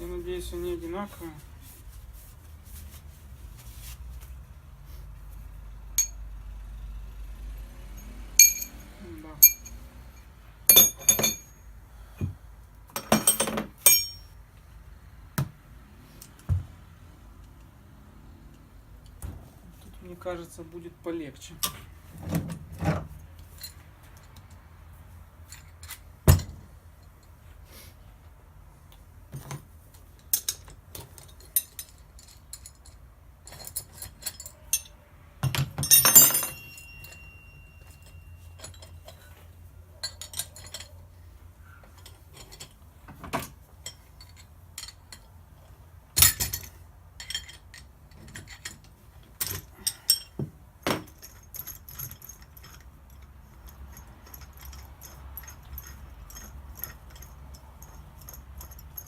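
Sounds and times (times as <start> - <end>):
metal tools clinking: 6.0 - 6.4, 7.8 - 11.8, 12.9 - 14.4, 23.2 - 24.7, 25.4 - 27.4, 29.4 - 59.0.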